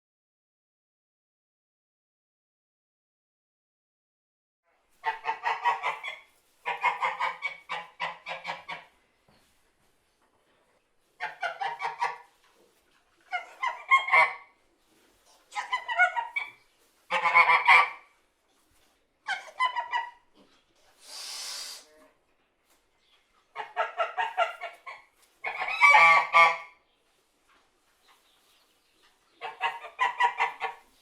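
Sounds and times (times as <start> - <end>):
goose honking: 5.0 - 8.9, 13.3 - 14.5, 15.5 - 18.1, 23.6 - 26.8.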